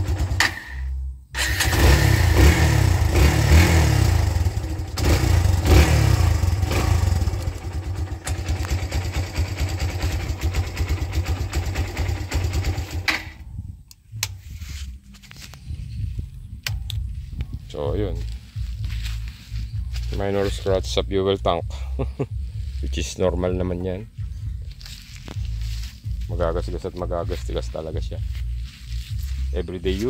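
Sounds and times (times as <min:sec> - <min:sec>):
engine revving blips: 0:00.0 - 0:09.0
motorcycle engine starting and idling: 0:00.0 - 0:14.4, 0:17.9 - 0:30.0.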